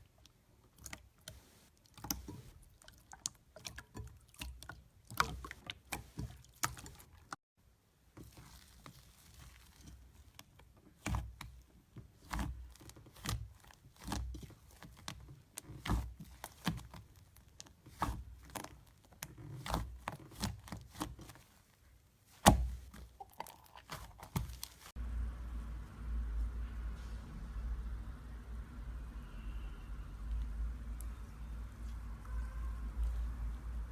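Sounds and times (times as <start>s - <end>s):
slime squished by hand: 8.2s - 24.9s.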